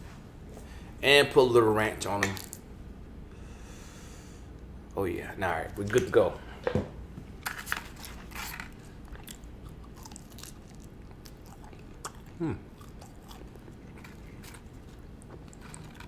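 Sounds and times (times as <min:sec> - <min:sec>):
crunching and wet chewing: 0:07.9 - 0:16.0
person humming: 0:12.4 - 0:12.7.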